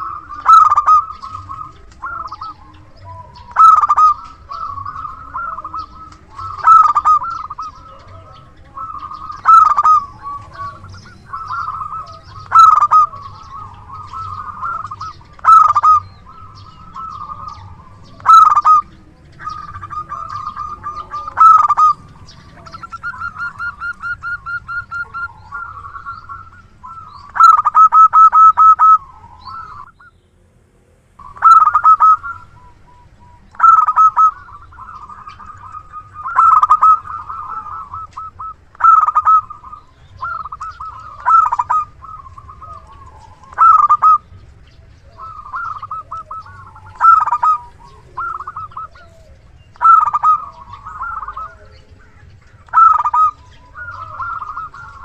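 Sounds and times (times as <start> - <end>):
dove cooing: 0.0 - 55.0.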